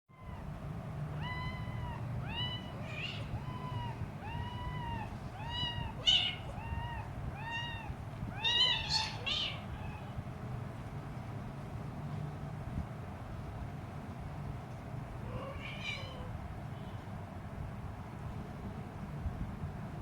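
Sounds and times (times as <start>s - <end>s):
kitten meowing: 1.2s - 10.2s, 15.3s - 16.3s.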